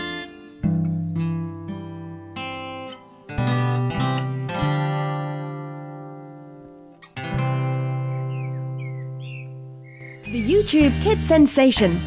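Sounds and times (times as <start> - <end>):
faint whistle-like glides: 9.9 - 11.2.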